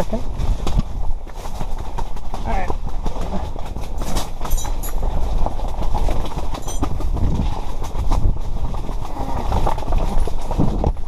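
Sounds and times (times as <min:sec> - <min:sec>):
wind buffeting microphone: 0:04.7 - 0:11.0.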